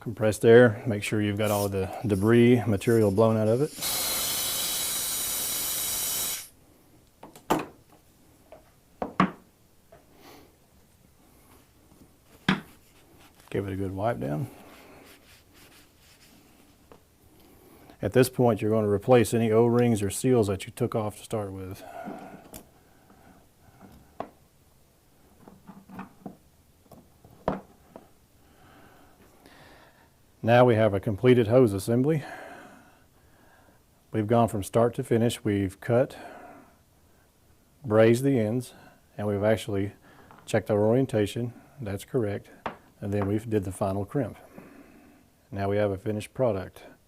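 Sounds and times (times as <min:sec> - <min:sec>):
tools knocking on a workbench: 0:09.0 - 0:09.4.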